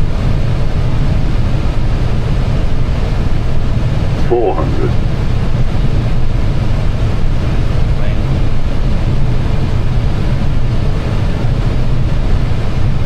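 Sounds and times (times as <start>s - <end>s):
airflow and engine rumble: 0.0s - 13.0s.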